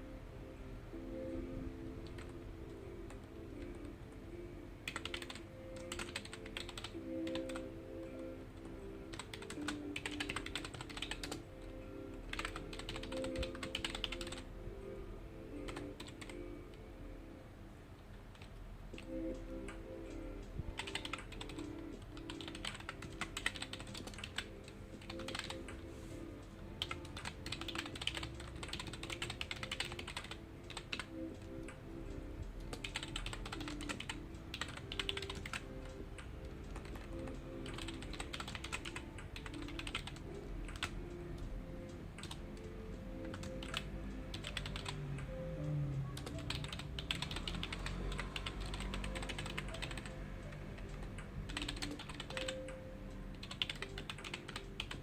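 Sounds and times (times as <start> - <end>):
background music: 0.0 - 55.0
computer keyboard typing: 2.0 - 4.2, 4.8 - 14.6, 15.5 - 16.8, 18.2 - 55.0.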